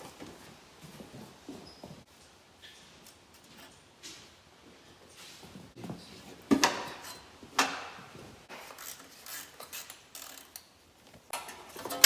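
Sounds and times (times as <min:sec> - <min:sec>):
metal tools clinking and rattling: 0:11.3 - 0:12.0.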